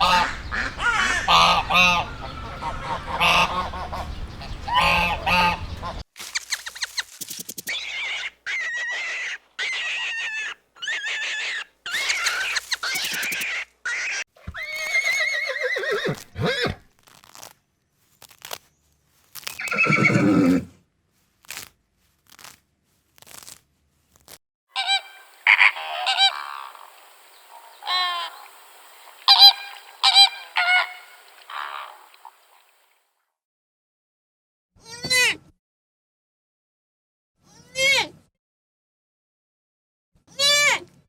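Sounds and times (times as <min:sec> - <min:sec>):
poultry honking: 0:00.0 - 0:06.0, 0:24.8 - 0:32.8
farm animal calls: 0:00.0 - 0:16.7, 0:19.5 - 0:20.7, 0:24.8 - 0:32.9.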